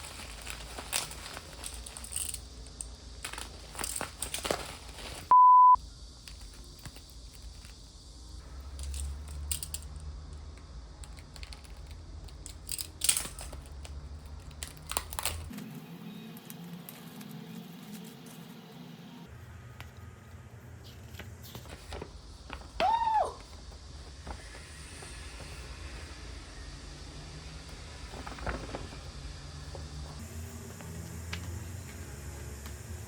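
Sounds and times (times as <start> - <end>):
packaging crinkling and rustling: 0.0 - 5.3, 28.1 - 29.1
loud steady beep: 5.3 - 5.8.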